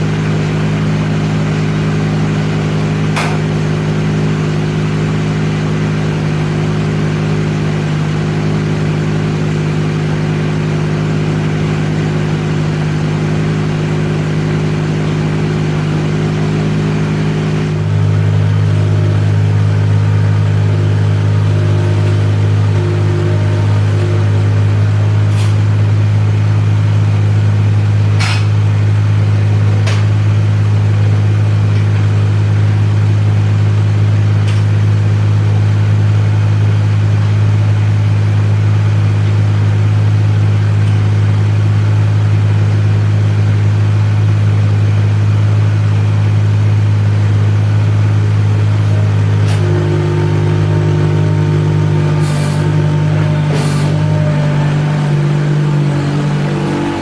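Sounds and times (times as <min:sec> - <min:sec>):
engine running steadily: 0:00.0 - 0:57.0
sharp clicks and knocks: 0:03.1 - 0:03.7, 0:28.2 - 0:28.6, 0:29.7 - 0:30.8.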